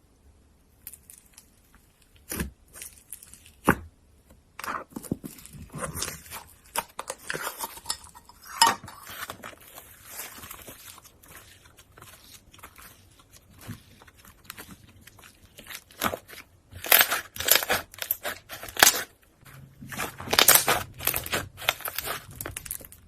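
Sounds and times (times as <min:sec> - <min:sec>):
slime crackling: 0:09.1 - 0:23.0.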